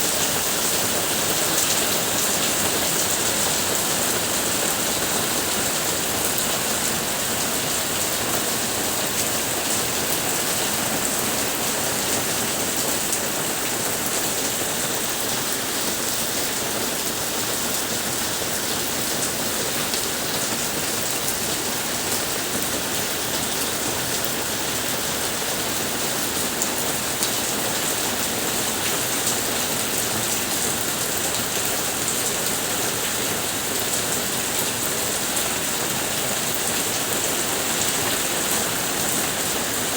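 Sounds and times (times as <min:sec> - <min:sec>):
rain falling steadily: 0:00.0 - 0:39.9.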